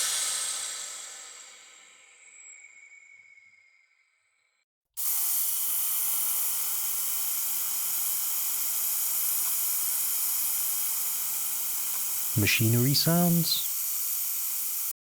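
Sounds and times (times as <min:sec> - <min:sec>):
high hiss of escaping air: 0:05.0 - 0:14.9.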